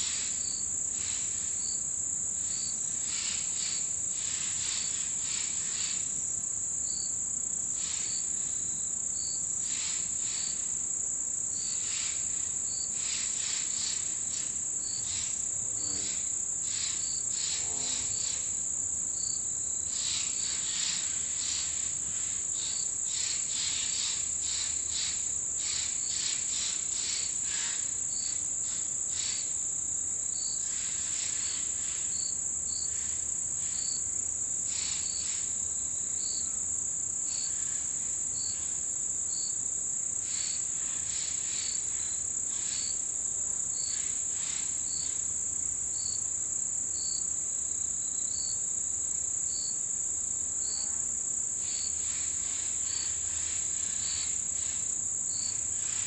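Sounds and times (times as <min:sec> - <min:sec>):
insect chirping: 0:00.0 - 0:56.0
insect high-pitched trill: 0:11.5 - 0:56.0.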